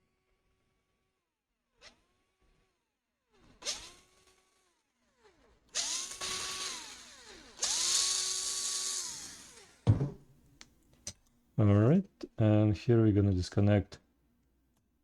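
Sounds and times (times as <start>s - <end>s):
electric screwdriver whine: 5.8s - 9.8s
short knock: 9.9s - 10.2s.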